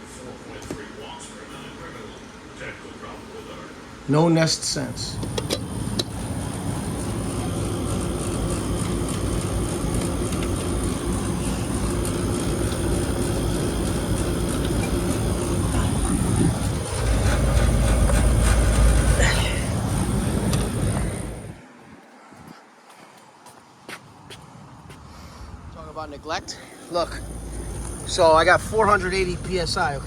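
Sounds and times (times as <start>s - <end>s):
air conditioning unit running: 0.0s - 22.0s, 25.5s - 30.0s
low rumble: 5.6s - 21.6s, 25.5s - 30.0s.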